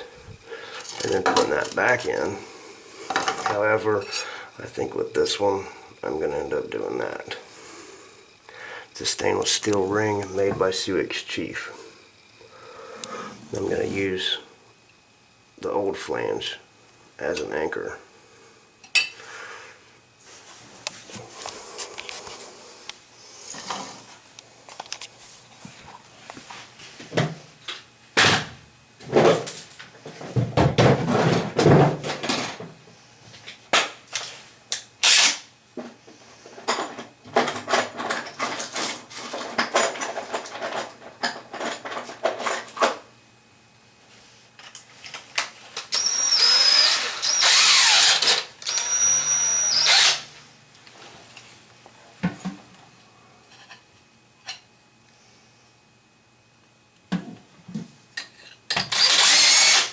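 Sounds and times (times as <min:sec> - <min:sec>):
power drill whining: 0:35.0 - 0:35.4, 0:45.8 - 0:50.3, 0:58.8 - 0:59.9
tools and metal parts clinking: 0:36.7 - 0:42.9, 0:44.6 - 0:45.9.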